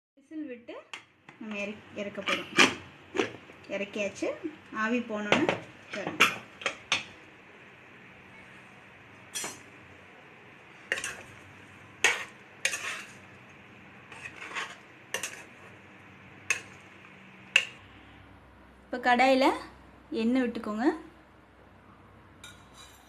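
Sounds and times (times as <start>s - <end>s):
metal pots and pans clinking: 9.3s - 9.6s, 10.9s - 11.3s, 15.2s - 15.5s.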